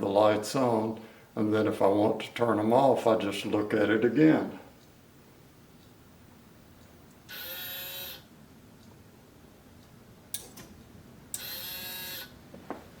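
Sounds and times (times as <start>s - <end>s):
small motor whirring: 7.3s - 8.2s, 11.4s - 12.3s.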